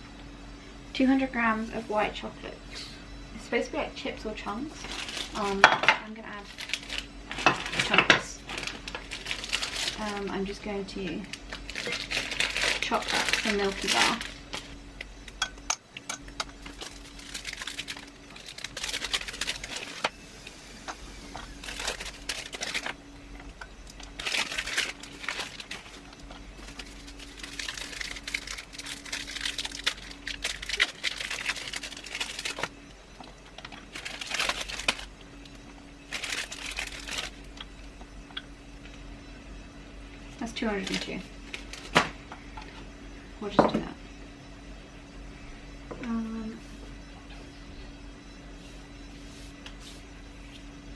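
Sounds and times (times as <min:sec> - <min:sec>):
plastic wrappers crinkling: 0:04.7 - 0:15.5, 0:16.1 - 0:20.1, 0:21.3 - 0:37.8, 0:40.7 - 0:42.2.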